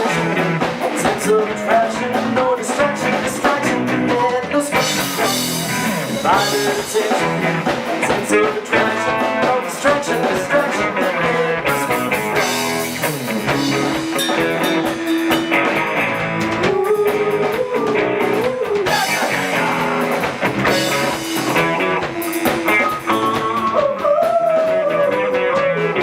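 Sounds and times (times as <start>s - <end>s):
rock band playing: 0.0s - 26.0s
lead guitar bending notes: 11.4s - 24.0s.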